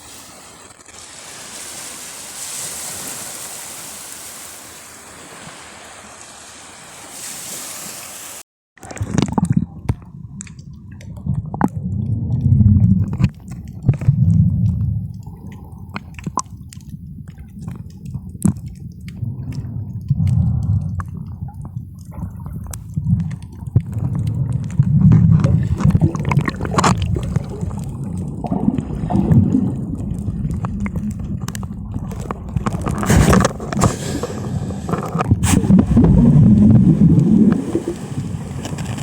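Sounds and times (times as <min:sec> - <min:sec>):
underwater gurgling rumble: 0:08.8 - 0:39.0.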